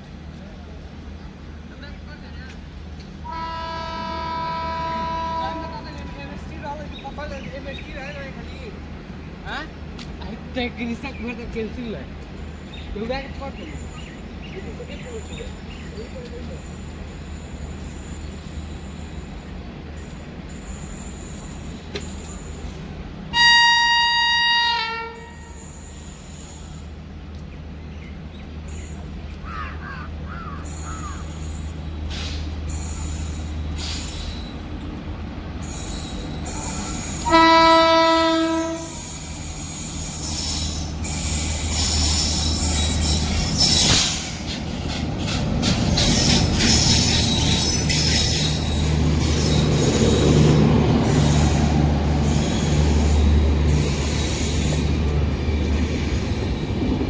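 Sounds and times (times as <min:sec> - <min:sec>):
train rumbling past: 0:00.0 - 0:57.0
train horn blast: 0:03.2 - 0:06.4, 0:23.3 - 0:25.8, 0:36.5 - 0:39.2
wheels squealing on rails: 0:12.2 - 0:57.0.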